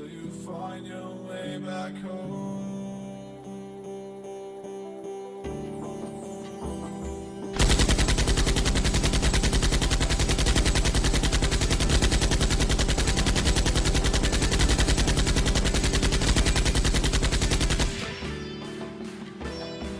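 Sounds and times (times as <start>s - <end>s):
rapid-fire rattle of sharp bangs: 7.6s - 18.2s.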